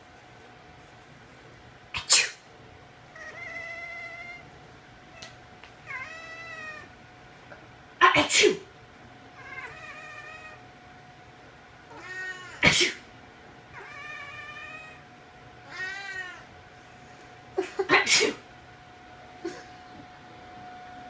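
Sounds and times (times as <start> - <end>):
cat meowing: 3.2 - 4.5, 5.2 - 6.9, 9.4 - 10.6, 11.9 - 12.6, 13.7 - 15.0, 15.6 - 16.5.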